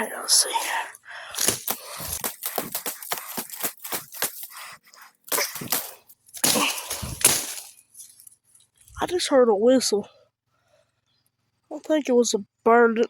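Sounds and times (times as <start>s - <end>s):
rustling of brush and leaves: 0.4s - 9.1s
machete chopping knocks: 5.3s - 7.7s.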